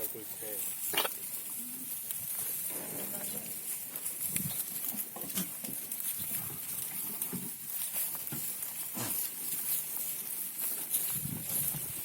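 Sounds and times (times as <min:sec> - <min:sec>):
goats making low sounds: 0:00.2 - 0:12.0.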